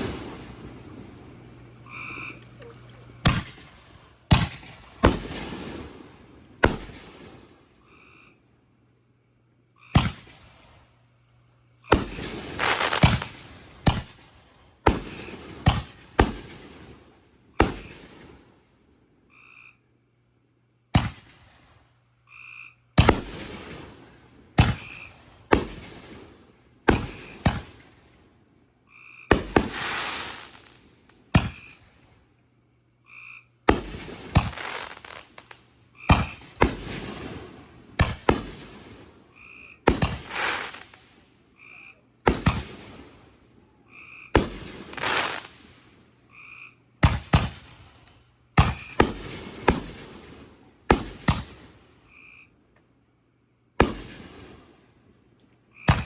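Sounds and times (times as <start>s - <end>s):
fireworks bangs and crackling: 0.0s - 1.6s, 3.2s - 7.6s, 10.0s - 10.8s, 11.9s - 18.5s, 21.0s - 21.7s, 23.0s - 28.2s, 29.3s - 32.0s, 33.6s - 41.2s, 42.3s - 43.4s, 44.3s - 46.0s, 47.0s - 51.9s, 53.8s - 54.9s
frogs croaking: 0.0s - 3.6s, 5.1s - 10.2s, 19.2s - 20.3s, 22.1s - 25.8s, 28.8s - 30.8s, 31.4s - 40.9s, 41.5s - 42.2s, 43.7s - 45.5s, 46.2s - 47.0s, 52.0s - 52.7s, 55.7s - 56.0s.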